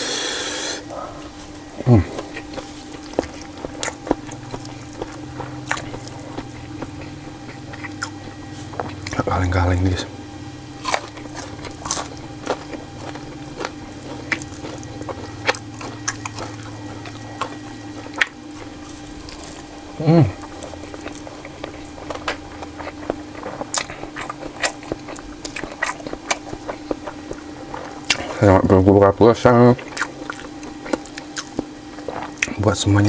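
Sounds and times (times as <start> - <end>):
person humming: 0.0 - 2.5, 19.9 - 20.6
faint steady hum: 0.0 - 33.0
chewing with wet mouth clicks: 1.2 - 10.0, 10.8 - 33.0.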